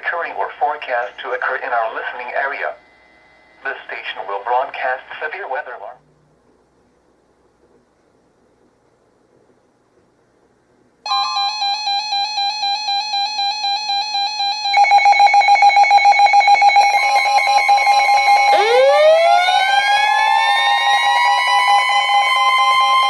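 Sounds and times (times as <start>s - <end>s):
rapid pulsing alarm beep: 11.1s - 23.0s
siren-like tone rising in pitch: 11.1s - 23.0s
steady warning alarm tone: 11.1s - 23.0s.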